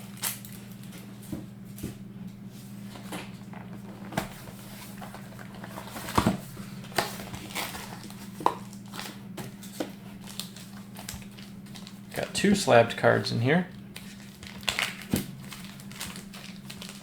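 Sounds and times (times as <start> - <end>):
low electrical hum: 0.0 - 17.0
box packaging taps and rustles: 3.5 - 12.0, 14.0 - 17.0.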